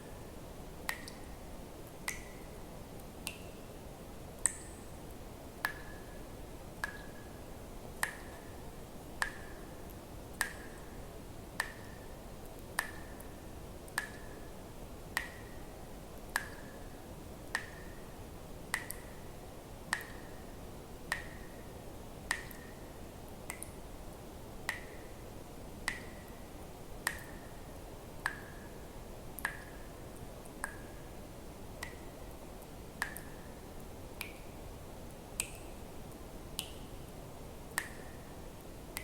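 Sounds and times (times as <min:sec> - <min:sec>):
faint steady hiss: 0:00.0 - 0:39.0
water drops plinking into water: 0:00.8 - 0:01.4, 0:02.0 - 0:02.6, 0:03.2 - 0:03.6, 0:04.4 - 0:05.0, 0:05.6 - 0:06.2, 0:06.8 - 0:07.4, 0:08.0 - 0:08.5, 0:09.2 - 0:09.6, 0:10.3 - 0:11.0, 0:11.6 - 0:14.4, 0:15.2 - 0:15.6, 0:16.3 - 0:16.9, 0:17.5 - 0:18.0, 0:18.7 - 0:19.2, 0:19.9 - 0:20.3, 0:22.3 - 0:22.8, 0:23.5 - 0:23.8, 0:24.7 - 0:25.1, 0:25.9 - 0:26.4, 0:27.0 - 0:27.5, 0:28.2 - 0:28.7, 0:29.4 - 0:29.9, 0:30.6 - 0:31.0, 0:31.8 - 0:33.5, 0:34.2 - 0:34.6, 0:35.4 - 0:35.8, 0:36.6 - 0:36.9, 0:37.7 - 0:38.3.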